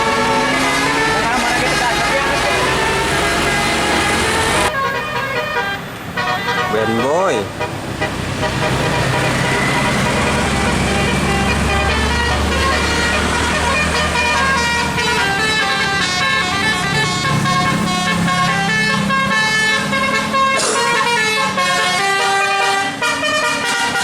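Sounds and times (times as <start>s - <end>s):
bus engine rumble: 0.0s - 24.0s
multi-tone bus horn tune: 0.0s - 24.0s.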